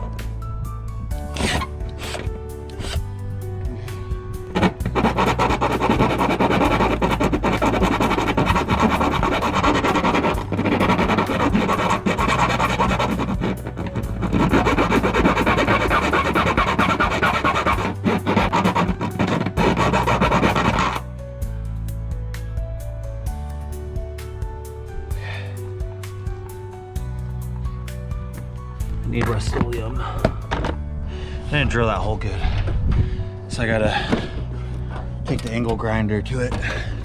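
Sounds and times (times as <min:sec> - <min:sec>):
background music: 0:00.0 - 0:37.0
power drill grinding through metal: 0:01.3 - 0:03.0, 0:04.5 - 0:21.1.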